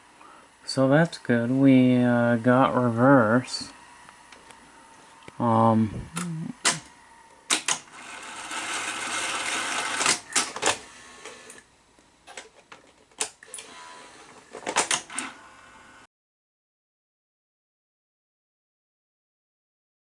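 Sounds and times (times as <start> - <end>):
tape transport whirring: 0.7 - 16.1
mechanical clicks and clunks: 7.5 - 7.9, 8.5 - 11.6, 12.3 - 15.4.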